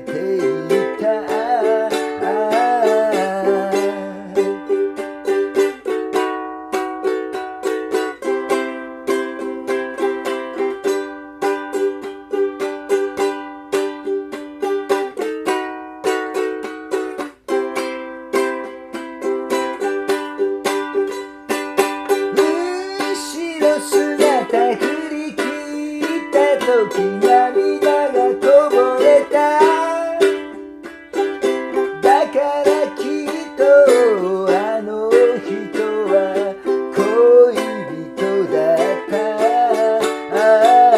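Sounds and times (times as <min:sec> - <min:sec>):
person singing: 0:00.0 - 0:05.9, 0:21.0 - 0:40.9
ukulele strumming chords: 0:00.0 - 0:40.9.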